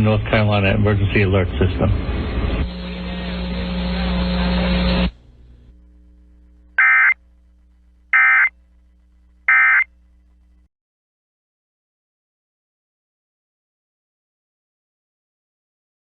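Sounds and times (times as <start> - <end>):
faint low hum: 0.0 - 10.7
short digital data bursts: 6.8 - 7.2, 8.2 - 8.5, 9.5 - 9.9.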